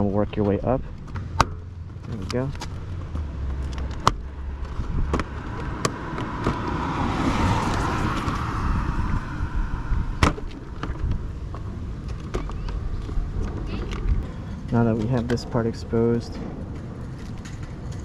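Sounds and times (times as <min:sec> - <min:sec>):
broad rush of noise: 0:03.2 - 0:15.1.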